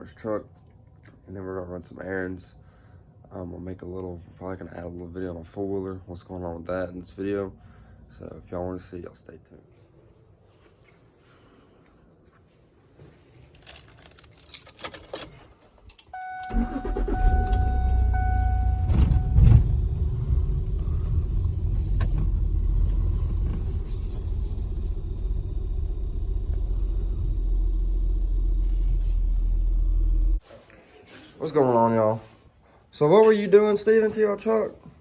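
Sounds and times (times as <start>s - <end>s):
keys jangling: 13.5s - 16.2s
car warning chime beeping: 16.1s - 19.6s
car engine starting and idling: 16.1s - 30.4s.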